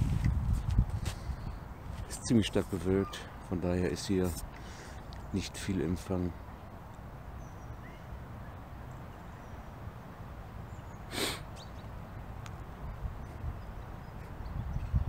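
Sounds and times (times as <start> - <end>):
wind buffeting microphone: 0.0 - 4.6, 12.8 - 15.0
short hissing burst: 11.1 - 11.5.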